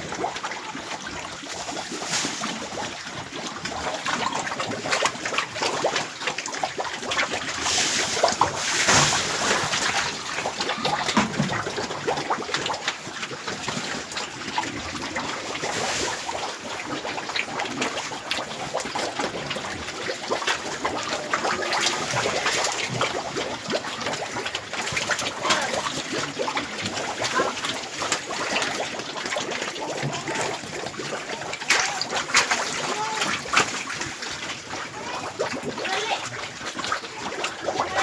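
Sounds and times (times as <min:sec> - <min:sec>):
pigs splashing and slurping: 0:00.0 - 0:38.0.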